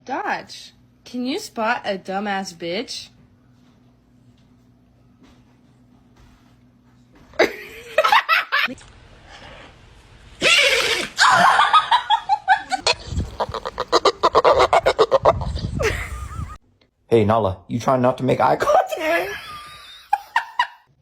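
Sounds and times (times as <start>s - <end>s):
person laughing hard: 7.4s - 8.8s, 10.6s - 16.6s.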